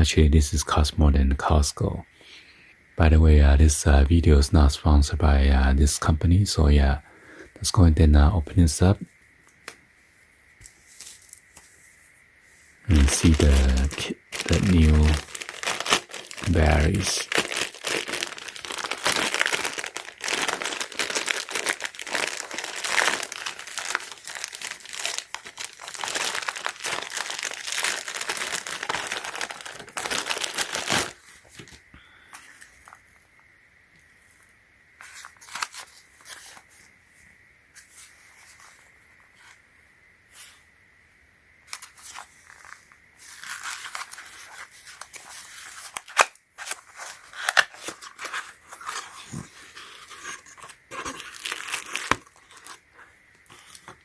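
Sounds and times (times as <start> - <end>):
packaging crinkling and tearing: 12.9 - 31.8, 35.1 - 36.6, 41.7 - 54.0.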